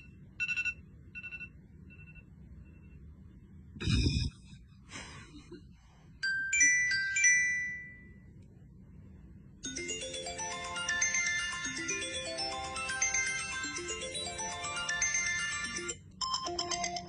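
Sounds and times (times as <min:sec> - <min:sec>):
fast melodic ringtone: 0:06.2 - 0:08.2, 0:09.6 - 0:17.0
bell-like chime notes: 0:09.7 - 0:16.0.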